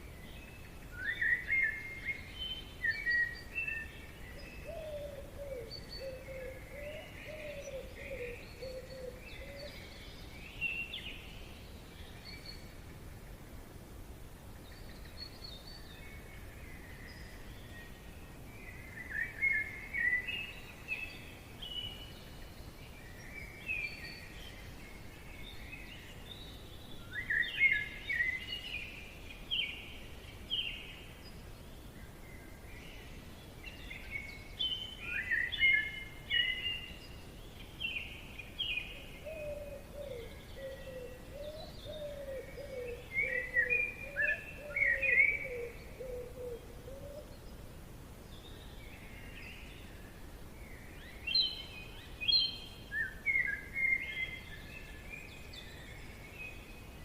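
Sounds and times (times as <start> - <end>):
faint steady hiss: 0.0 - 57.0
birds chirping and singing: 0.2 - 12.7, 32.8 - 47.6, 50.7 - 57.0.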